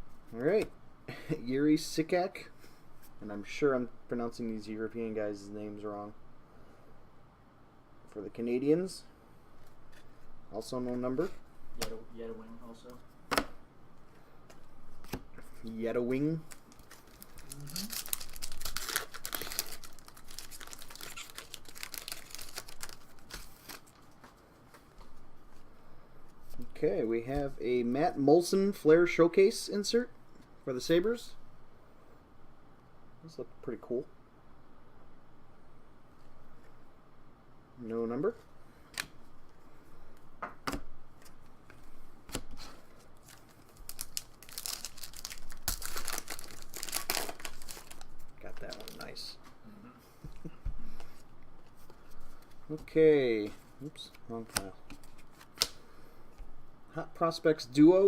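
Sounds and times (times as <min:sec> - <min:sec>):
wrapper crinkling and tearing: 0:16.4 - 0:24.0, 0:43.2 - 0:49.4.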